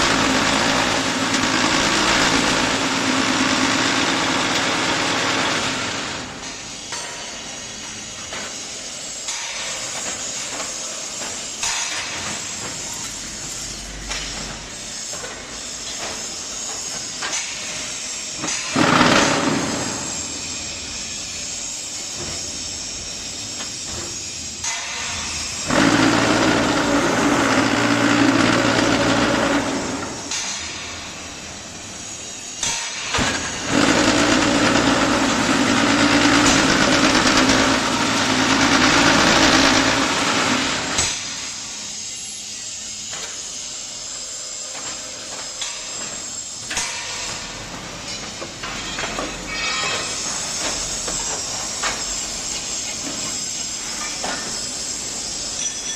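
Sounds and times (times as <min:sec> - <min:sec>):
loud buzzing machine hum: 0:00.0 - 0:06.8, 0:17.8 - 0:43.1.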